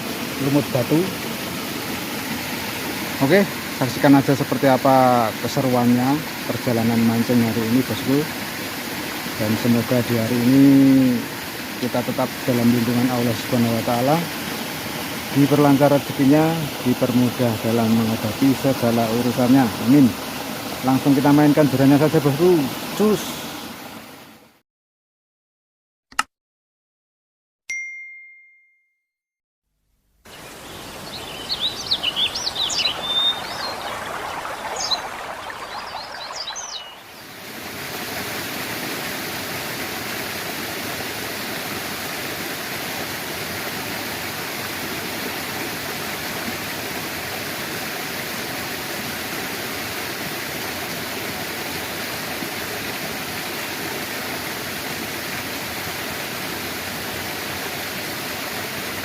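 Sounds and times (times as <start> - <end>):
running water: 0.0 - 24.4, 30.3 - 59.0
ding: 27.7 - 29.1
birds chirping: 30.3 - 37.3
water pouring from channel: 32.8 - 59.0.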